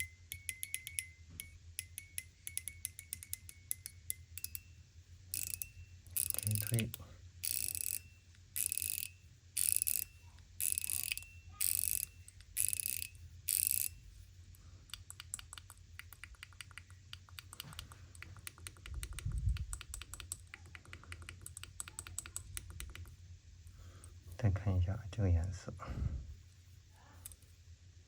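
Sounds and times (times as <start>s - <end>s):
metal slider toy ratcheting clicks: 0.0s - 4.7s, 5.3s - 14.0s
sharp clicks: 14.9s - 23.2s.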